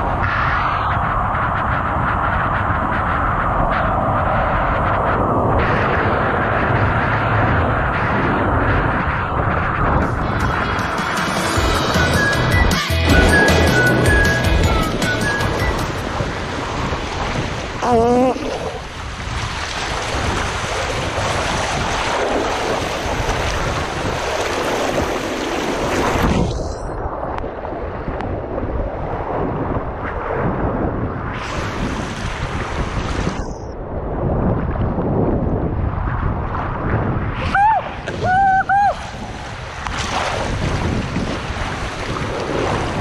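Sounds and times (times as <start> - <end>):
rushing splashing water: 0.0 - 30.4, 31.4 - 33.5, 36.5 - 43.0
steady wash of noise: 0.0 - 34.9
wind buffeting microphone: 0.0 - 43.0
music with pulsing bass beat: 10.0 - 16.1
wavering squeal: 10.8 - 16.1.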